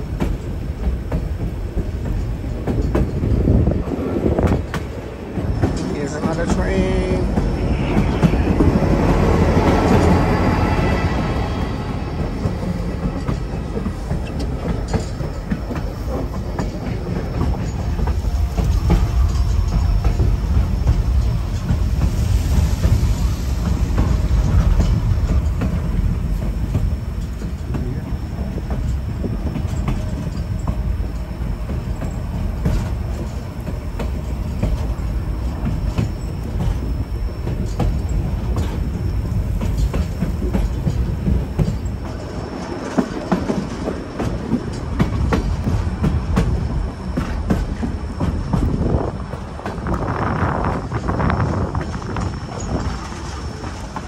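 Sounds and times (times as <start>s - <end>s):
wheels clicking over rail joints: 0.0s - 23.0s, 23.6s - 54.0s
train rumbling along track: 0.0s - 54.0s.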